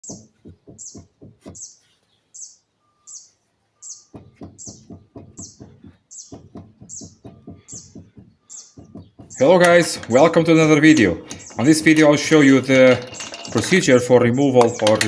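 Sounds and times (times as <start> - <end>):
small bird chirping: 0.0 - 10.4.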